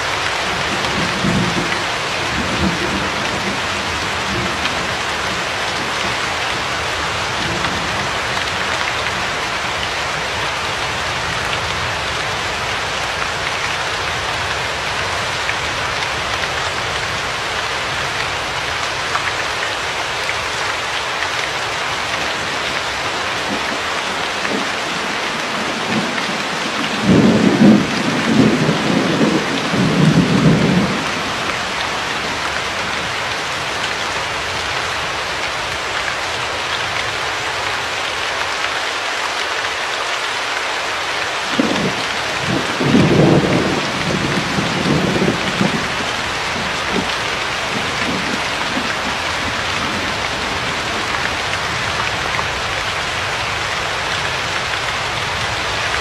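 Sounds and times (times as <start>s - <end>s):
heavy rain falling: 0.0s - 56.0s
low thunder rumbling: 0.4s - 6.7s, 23.0s - 32.8s, 41.5s - 52.3s.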